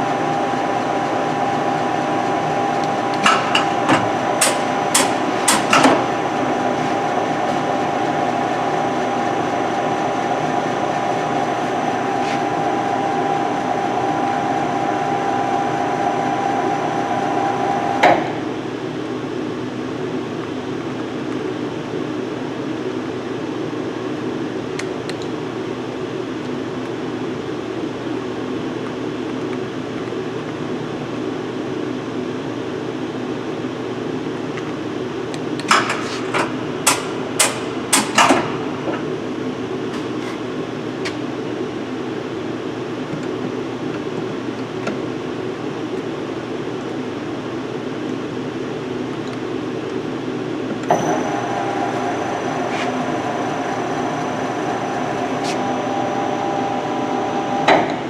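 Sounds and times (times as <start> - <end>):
lathe humming: 0.0 - 18.0, 50.1 - 58.0
high whine: 49.2 - 58.0.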